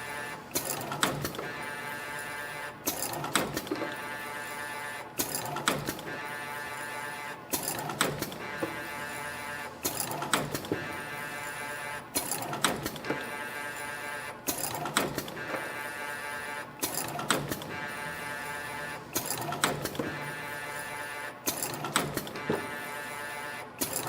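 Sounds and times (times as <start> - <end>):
sharp mechanical clicks and knocks: 0.5 - 1.5, 2.8 - 4.0, 5.2 - 6.1, 7.5 - 9.2, 9.8 - 10.9, 12.1 - 13.2, 14.4 - 15.7, 16.8 - 17.8, 18.8 - 20.3, 21.4 - 22.8, 23.8 - 24.0.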